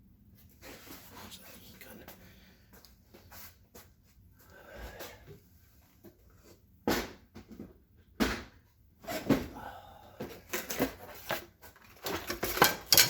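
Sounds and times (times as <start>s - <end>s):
tools clattering: 10.8s - 13.0s.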